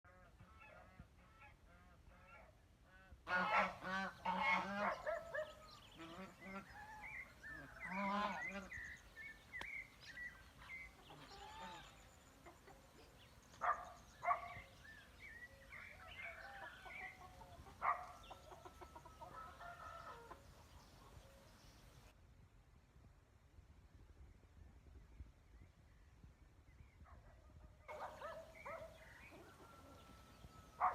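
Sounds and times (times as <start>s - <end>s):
chickens clucking: 3.3s - 14.6s, 15.8s - 21.4s, 27.9s - 30.9s.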